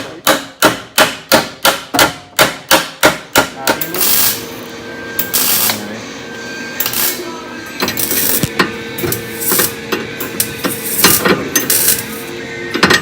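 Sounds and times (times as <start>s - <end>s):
hammering: 0.0s - 4.4s
clattering shop noise: 0.0s - 13.0s.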